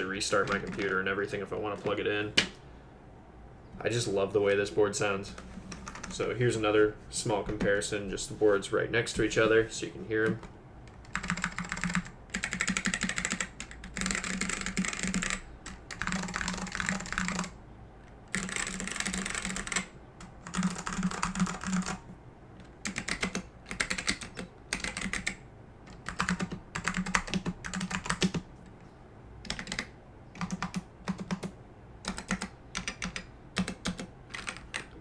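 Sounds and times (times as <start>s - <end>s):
mechanical keyboard typing: 5.7s - 6.2s, 11.0s - 17.6s, 18.3s - 22.0s, 22.8s - 28.4s, 29.4s - 35.0s.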